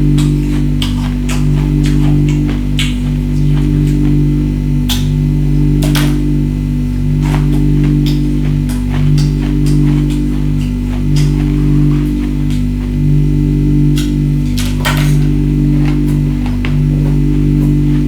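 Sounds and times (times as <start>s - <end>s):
music with low sustained tones: 0.0s - 18.0s.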